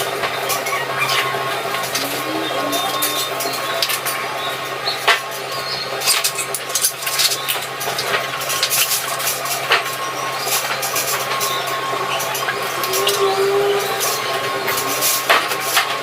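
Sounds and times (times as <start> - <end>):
steady hum: 0.0 - 6.5
clicks and clinks: 6.0 - 13.2.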